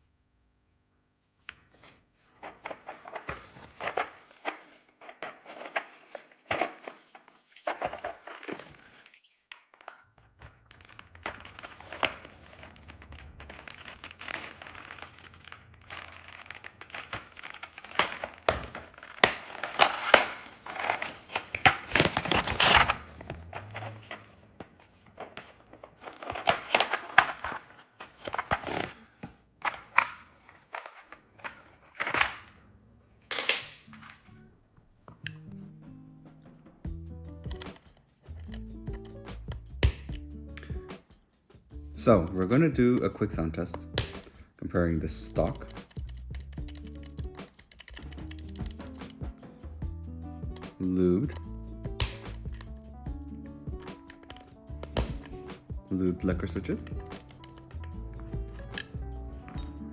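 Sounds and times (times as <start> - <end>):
keyboard keystroke clacks: 36.3 - 41.2, 45.4 - 59.9.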